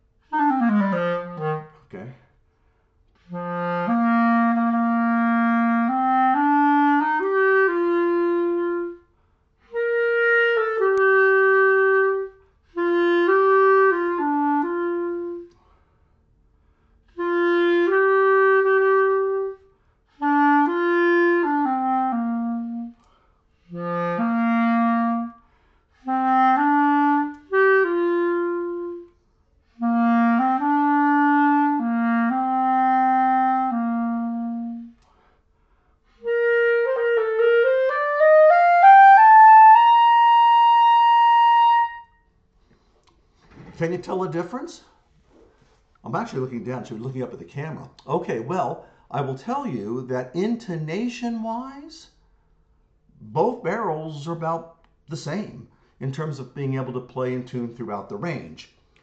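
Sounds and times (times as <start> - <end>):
clarinet playing low phrases: 0.2 - 2.2, 3.1 - 15.8, 16.6 - 35.4, 36.0 - 42.9.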